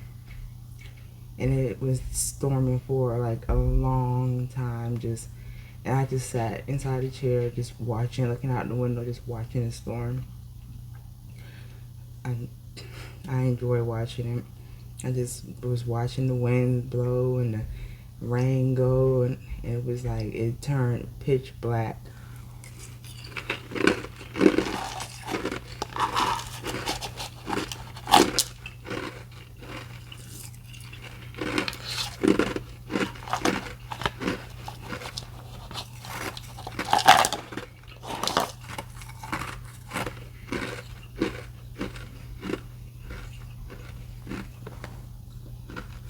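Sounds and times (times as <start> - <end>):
steady low hum: 0.0 - 46.0
chewing ice cubes: 22.4 - 44.9, 45.5 - 46.0.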